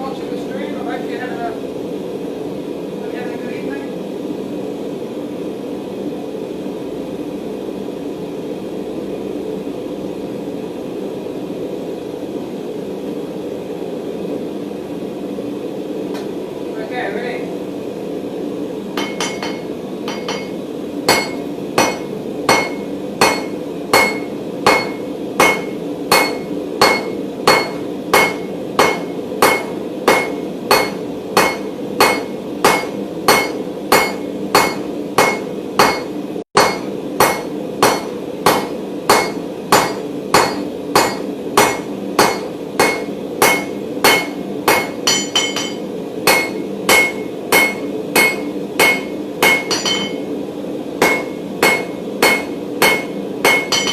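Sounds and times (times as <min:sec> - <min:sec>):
hammer ringing on hot steel: 0:19.0 - 0:50.3, 0:51.0 - 0:53.9.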